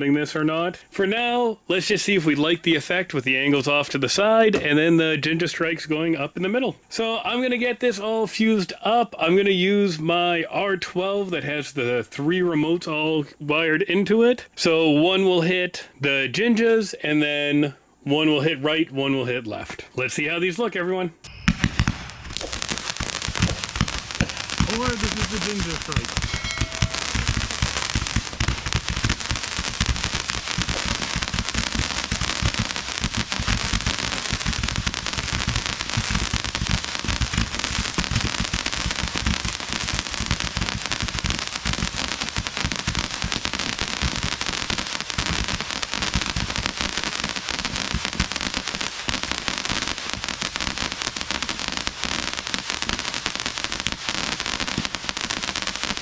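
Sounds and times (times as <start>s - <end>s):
fireworks popping and crackling: 20.5s - 56.0s.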